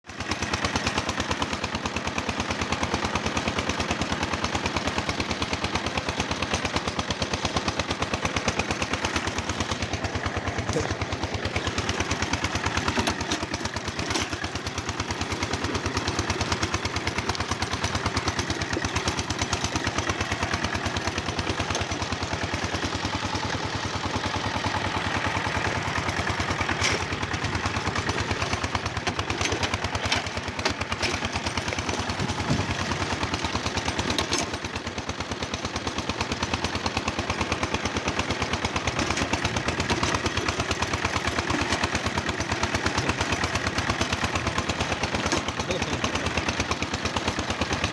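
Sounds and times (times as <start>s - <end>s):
tractor engine knocking: 0.1s - 47.9s.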